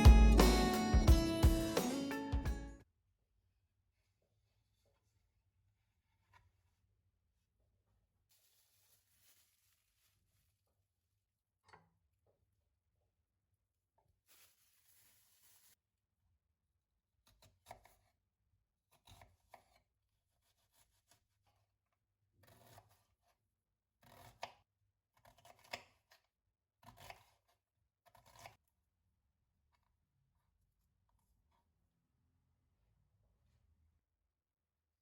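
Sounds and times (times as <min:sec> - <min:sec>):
food scraping and cutting strokes: 0:08.3 - 0:10.3, 0:14.3 - 0:15.8, 0:18.9 - 0:21.5, 0:22.4 - 0:23.4, 0:26.8 - 0:28.6.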